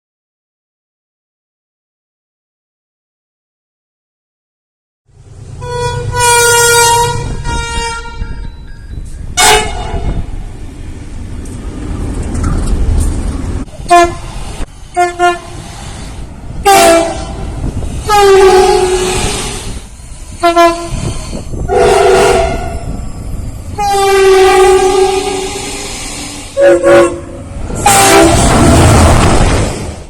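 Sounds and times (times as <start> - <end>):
passing train rumble: 5.1 - 30.0
train air horn blasts: 5.6 - 8.5, 9.4 - 10.3, 13.8 - 15.7, 16.6 - 19.8, 20.4 - 23.0, 23.8 - 25.9, 26.5 - 28.6.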